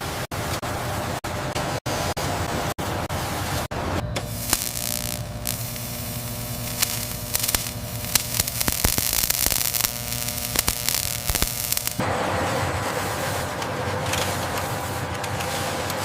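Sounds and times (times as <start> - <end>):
electrical hum: 0.0 - 16.0
sharp clicks and crackles: 4.2 - 12.0
hiss: 4.3 - 12.0.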